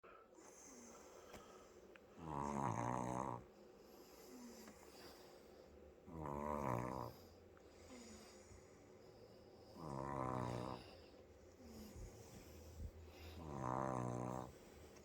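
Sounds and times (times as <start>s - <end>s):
faint breathing: 0.0s - 2.2s, 3.5s - 6.0s, 7.1s - 15.0s
toddler snoring loudly: 2.2s - 3.5s, 6.1s - 7.2s, 9.7s - 10.9s, 13.2s - 14.6s.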